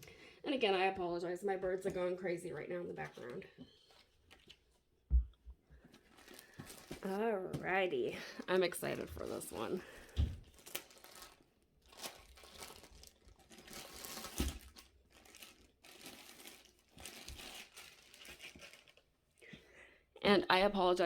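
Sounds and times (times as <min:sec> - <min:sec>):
plastic packaging crinkling: 0:05.9 - 0:19.2.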